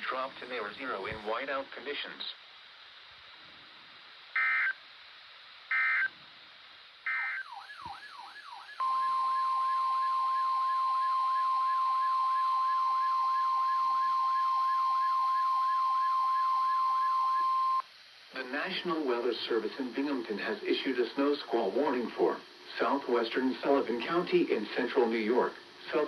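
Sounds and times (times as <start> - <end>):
loud steady attention tone: 4.3 - 4.8, 5.7 - 6.1, 7.0 - 17.9
short buzzy data bursts: 4.4 - 4.8, 5.7 - 6.1, 7.1 - 7.5, 8.8 - 17.8
wavering siren-like tone: 5.7 - 6.1, 7.1 - 17.8.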